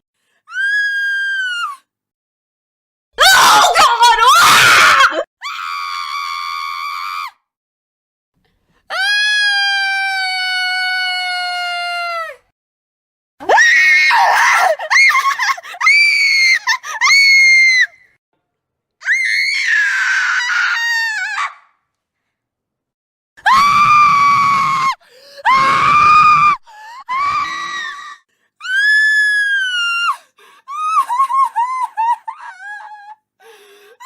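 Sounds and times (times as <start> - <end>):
women screaming: 3.2 - 7.3, 19.0 - 21.6, 23.4 - 30.2.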